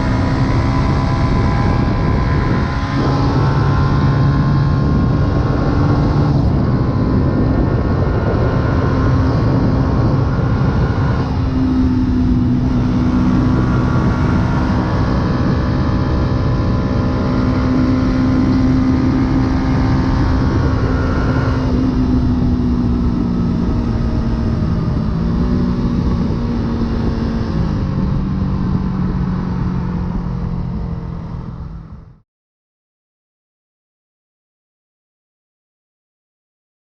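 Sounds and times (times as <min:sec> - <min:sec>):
motorcycle engine cruising: 0:00.0 - 0:32.2
wind rush: 0:00.0 - 0:32.2.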